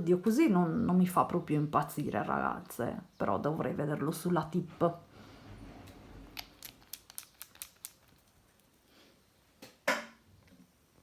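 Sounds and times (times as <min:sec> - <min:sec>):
small pots clicking and tapping: 0:05.9 - 0:08.7.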